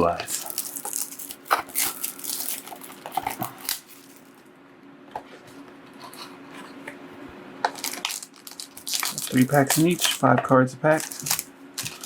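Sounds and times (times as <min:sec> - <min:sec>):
card packaging rustling: 0:00.0 - 0:04.4, 0:07.7 - 0:12.0
faint steady hum: 0:00.0 - 0:12.0.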